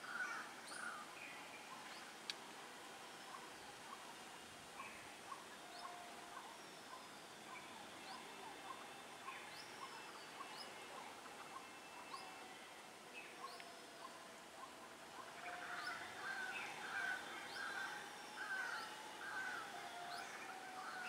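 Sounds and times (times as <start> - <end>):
birds chirping: 3.2 - 21.0.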